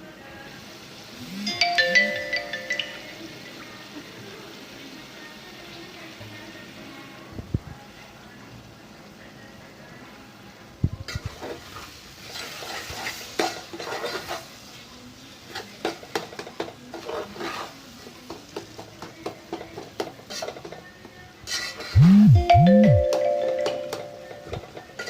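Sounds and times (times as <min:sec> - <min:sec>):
light sizzle: 0:00.0 - 0:01.5, 0:02.7 - 0:21.9
spoon stirring and scraping pan: 0:11.1 - 0:14.7, 0:15.5 - 0:20.8.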